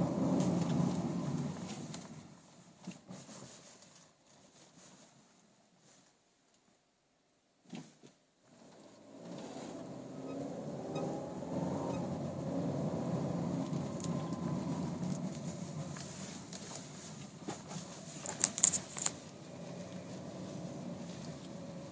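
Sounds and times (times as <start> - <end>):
car road and engine noise: 0.0 - 2.8, 8.4 - 21.9
high-pitched speedometer squeaks: 10.2 - 12.2.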